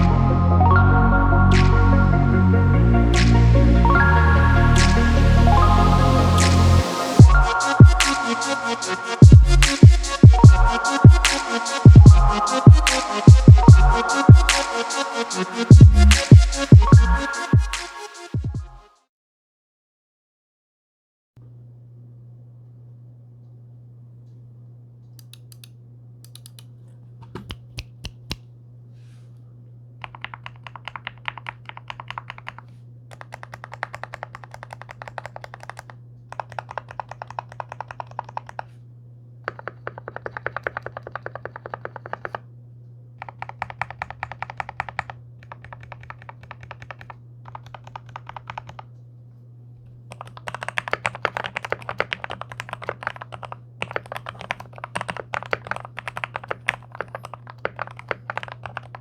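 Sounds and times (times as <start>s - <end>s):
steady low hum: 0.0s - 17.2s, 21.4s - 59.0s
mechanical keyboard typing: 26.3s - 26.7s, 30.0s - 38.7s, 39.5s - 42.4s, 43.2s - 48.9s, 50.1s - 59.0s.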